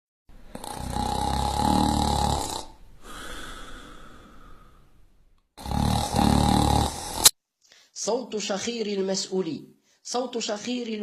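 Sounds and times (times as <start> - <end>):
person snoring: 0.5 - 4.8, 5.6 - 7.3.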